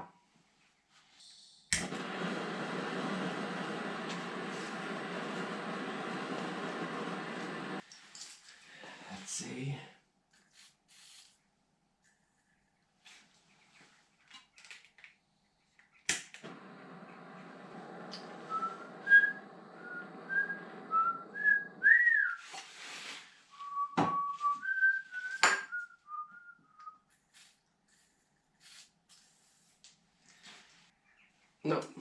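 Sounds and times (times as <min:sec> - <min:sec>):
steady whirring noise: 0:01.8 - 0:07.8, 0:16.4 - 0:21.9
person whistling a tune: 0:18.5 - 0:22.4, 0:23.6 - 0:27.0.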